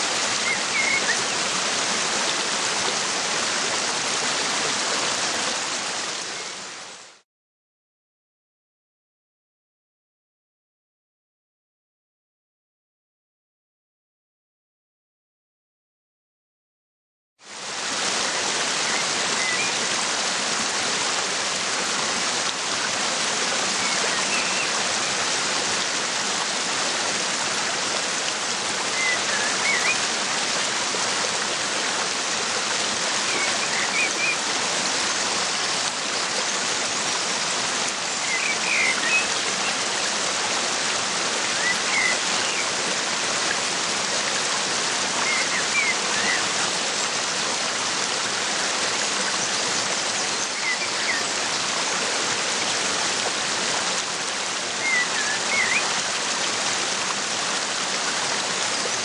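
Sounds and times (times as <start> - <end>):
waterfall rushing: 0.0 - 7.2, 17.5 - 59.0.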